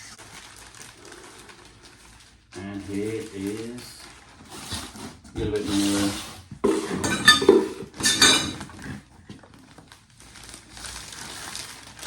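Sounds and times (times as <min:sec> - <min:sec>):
plastic parts rattling and clinking: 0:06.6 - 0:09.5.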